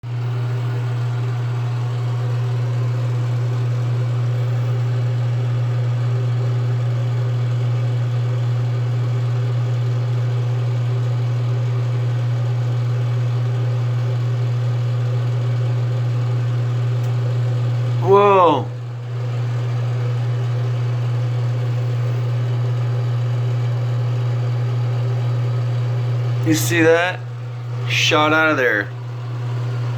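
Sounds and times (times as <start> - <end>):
low motor hum: 26.0 - 29.9.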